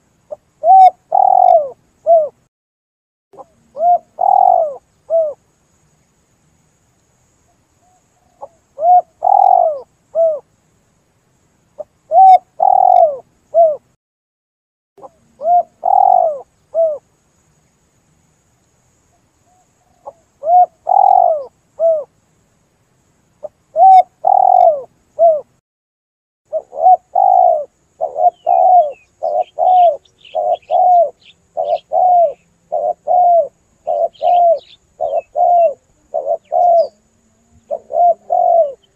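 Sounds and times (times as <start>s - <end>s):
small bird chirping: 0.2s - 2.4s, 3.4s - 6.2s, 6.9s - 10.5s, 11.7s - 13.9s, 15.0s - 17.8s, 18.4s - 22.1s, 23.4s - 25.5s, 26.5s - 38.9s
dove cooing: 0.6s - 2.4s, 3.4s - 5.4s, 8.2s - 10.4s, 12.1s - 13.9s, 15.0s - 17.0s, 19.9s - 22.1s, 23.4s - 25.5s, 26.5s - 38.9s.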